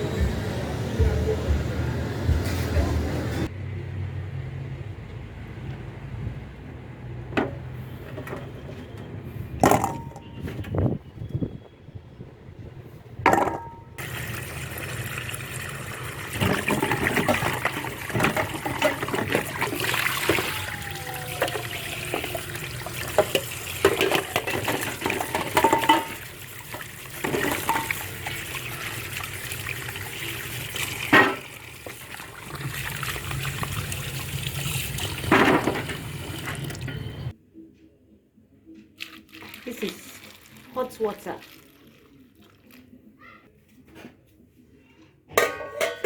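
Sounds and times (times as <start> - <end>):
containers knocking and clattering: 9.6 - 10.8, 13.2 - 14.6, 16.2 - 20.6, 21.3 - 28.8, 30.5 - 37.1, 45.4 - 46.0
water running and splashing: 14.0 - 36.9.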